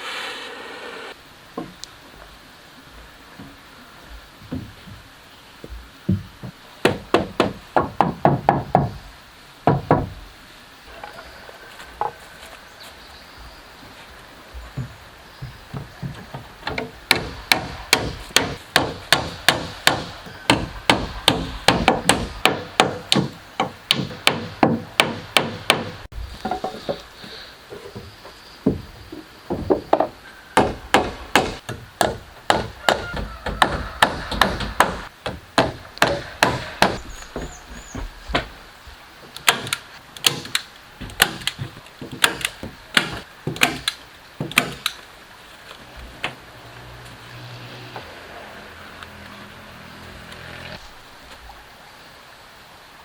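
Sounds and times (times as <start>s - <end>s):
soft irregular knocks: 14.6s - 17.2s, 25.8s - 36.3s
hammer blows on wood: 30.6s - 37.1s.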